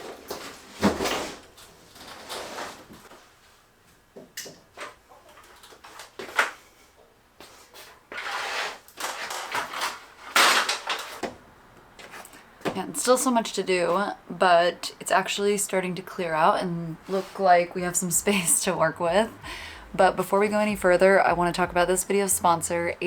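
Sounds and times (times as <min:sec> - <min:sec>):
objects scraping and sliding: 0:07.4 - 0:11.2, 0:17.0 - 0:17.7.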